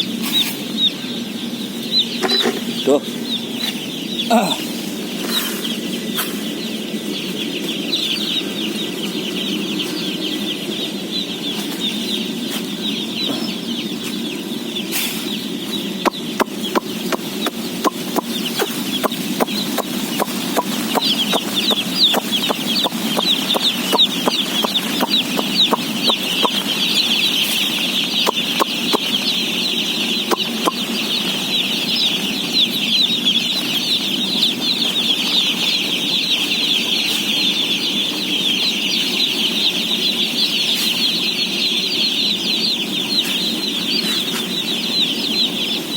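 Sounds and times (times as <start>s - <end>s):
chicks peeping: 0.0s - 45.9s
sharp taps and clicks: 16.0s - 26.7s, 30.3s - 30.9s.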